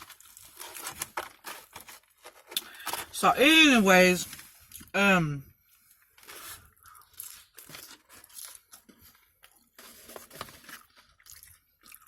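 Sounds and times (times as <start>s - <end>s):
food crunching while chewed: 5.8s - 12.0s.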